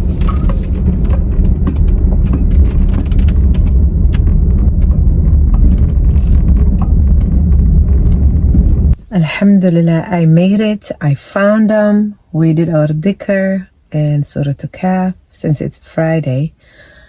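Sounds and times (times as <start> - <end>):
car road and engine rumble: 0.0 - 14.9.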